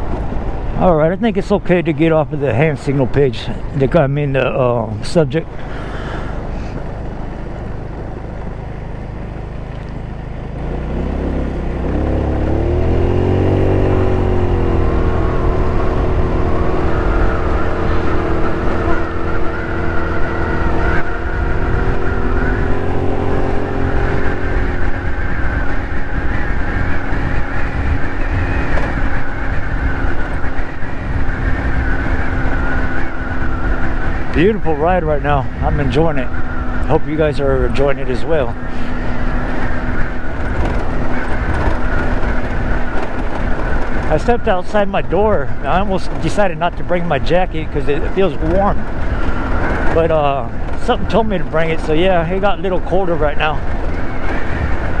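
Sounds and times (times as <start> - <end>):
scooter engine accelerating: 3.6 - 55.0.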